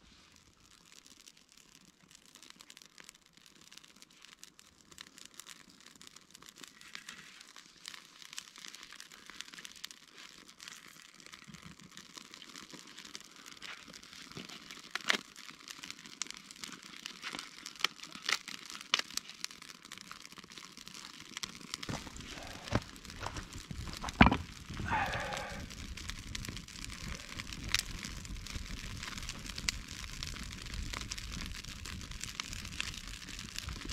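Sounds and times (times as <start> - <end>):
sharp cracks: 21.8 - 26.2
crinkling and rustling handling: 21.8 - 28.3.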